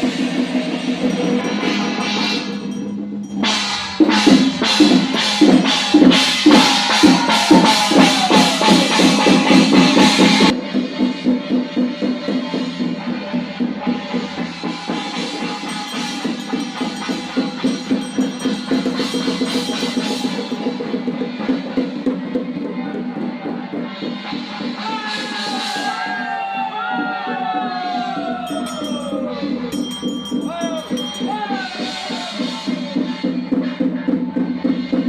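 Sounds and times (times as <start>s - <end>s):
loud evenly spaced strikes: 0.0s - 22.4s
music with drums and percussion: 0.0s - 35.0s.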